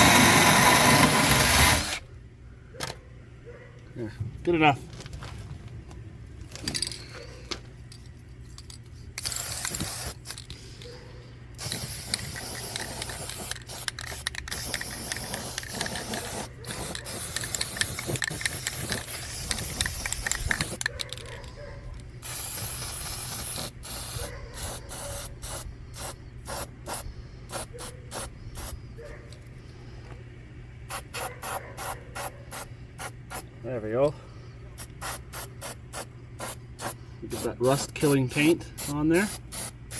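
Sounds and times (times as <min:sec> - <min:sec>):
aerosol can spraying: 0:09.2 - 0:10.4, 0:11.6 - 0:20.8, 0:22.2 - 0:28.7, 0:30.9 - 0:33.4, 0:35.0 - 0:38.2, 0:38.8 - 0:39.9.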